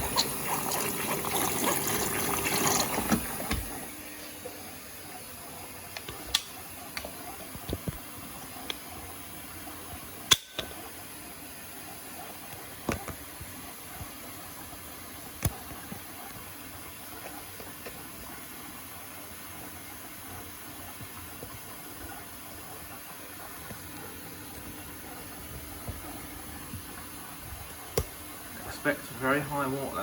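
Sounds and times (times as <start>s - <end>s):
washing machine filling with water: 0.0s - 30.0s.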